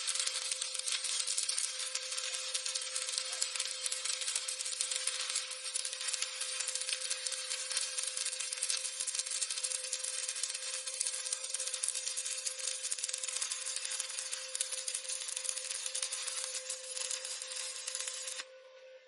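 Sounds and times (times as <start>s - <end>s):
welding arc crackling: 0.0s - 18.5s.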